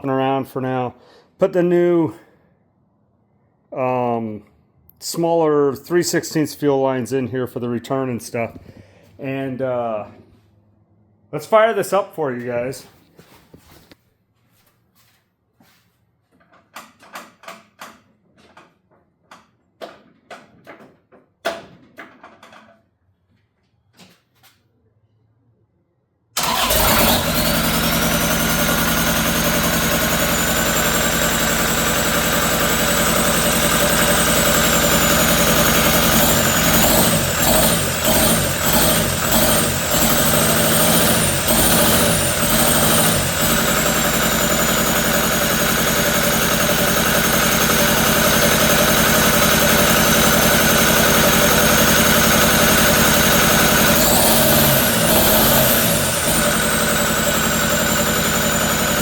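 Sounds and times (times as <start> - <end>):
diesel engine running: 26.4 - 59.0.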